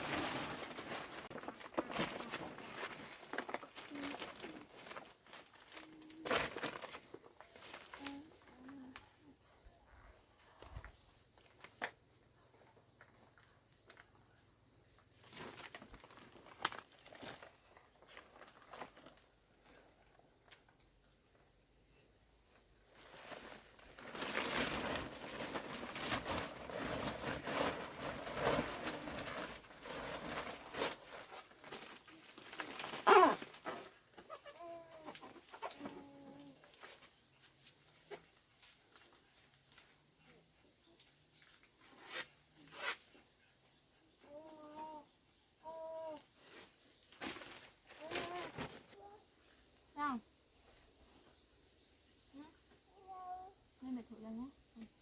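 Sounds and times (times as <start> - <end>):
rustling and scraping: 0.0 - 8.2, 15.0 - 19.2, 22.9 - 34.4, 46.4 - 49.0
insects chirring: 0.0 - 55.0.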